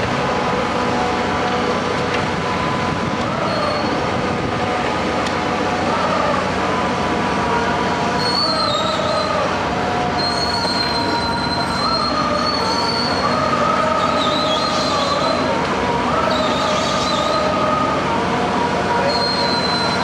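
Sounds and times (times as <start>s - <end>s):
heavy construction machinery running: 0.0s - 20.0s
high-pitched metallic squeals: 2.5s - 4.2s, 8.0s - 20.0s.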